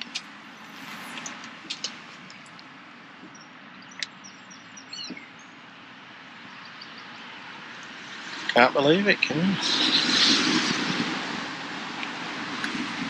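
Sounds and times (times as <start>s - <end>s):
small bird chirping: 3.2s - 5.6s.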